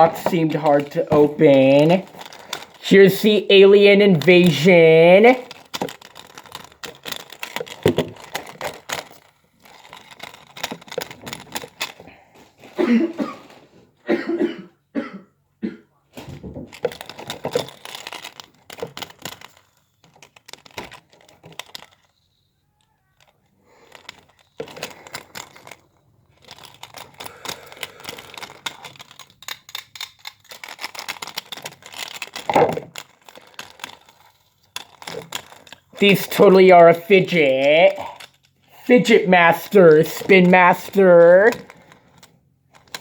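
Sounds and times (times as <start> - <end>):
plastic packaging crinkling: 0.0 - 12.8, 16.2 - 36.1
small plastic clicks and knocks: 5.4 - 12.1, 16.2 - 35.9.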